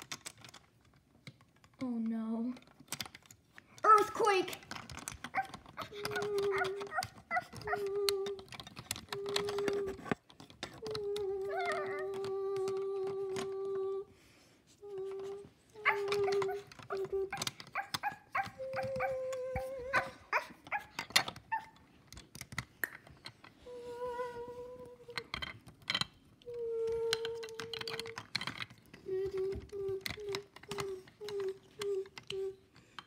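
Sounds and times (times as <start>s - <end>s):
plastic toy pieces clicking: 0.0s - 14.0s, 14.8s - 33.0s
person imitating dog howling: 5.4s - 10.0s, 10.8s - 14.1s, 15.0s - 21.7s, 26.5s - 28.2s.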